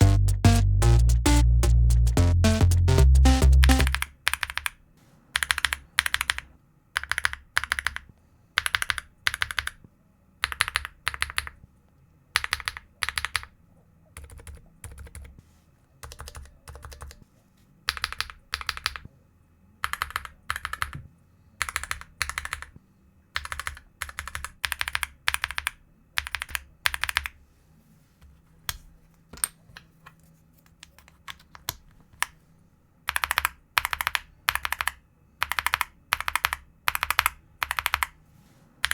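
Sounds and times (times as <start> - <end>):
mechanical keyboard typing clicks: 3.5 - 4.8, 5.4 - 9.8, 10.4 - 11.6, 12.4 - 13.5, 14.2 - 15.4, 16.0 - 17.2, 17.9 - 19.1, 19.8 - 21.0, 21.6 - 22.7, 23.4 - 27.4, 33.1 - 38.2.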